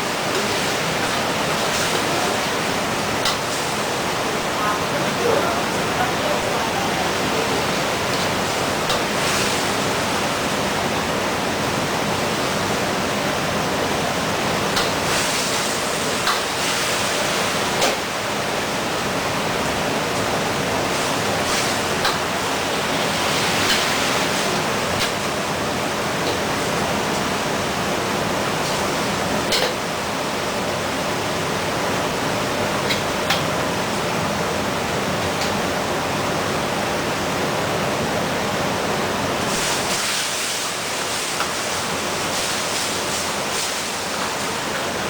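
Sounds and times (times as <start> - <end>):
food sizzling in oil: 14.7 - 17.8, 39.4 - 45.0.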